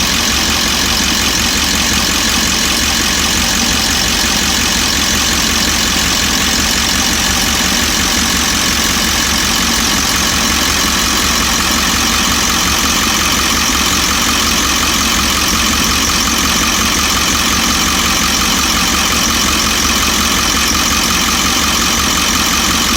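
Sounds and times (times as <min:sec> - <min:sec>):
diesel engine idling: 0:00.0 - 0:22.9.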